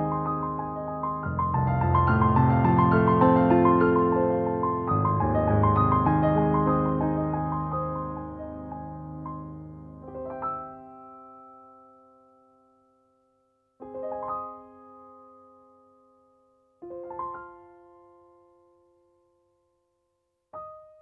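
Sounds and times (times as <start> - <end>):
soft rolled piano chords: 0.0 - 12.6.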